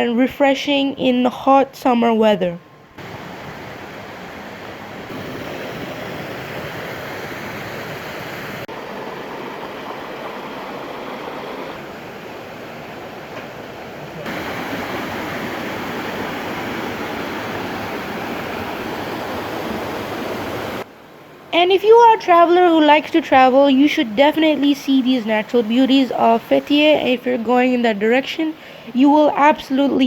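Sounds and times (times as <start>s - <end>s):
waterfall and river rushing: 3.0s - 21.5s.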